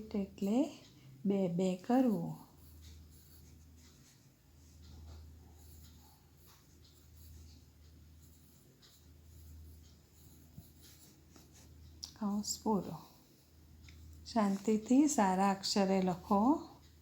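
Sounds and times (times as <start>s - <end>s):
low steady hum: 0.0s - 17.0s
pen scratching handwriting: 2.0s - 4.1s, 5.0s - 13.1s.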